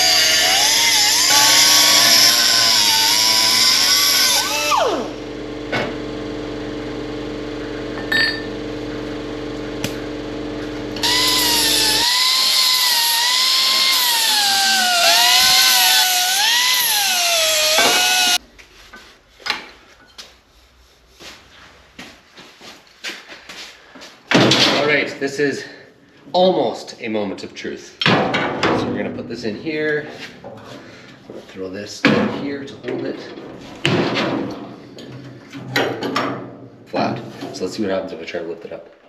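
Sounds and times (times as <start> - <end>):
motor winding down: 0.0 - 7.8, 10.6 - 18.4
machine humming: 0.0 - 18.4
power tool whining under load: 0.0 - 18.4.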